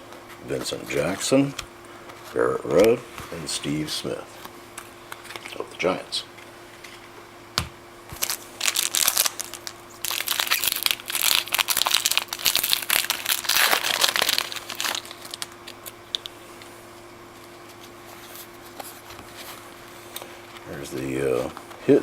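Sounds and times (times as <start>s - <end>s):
foil wrapper crinkling: 8.1s - 16.3s.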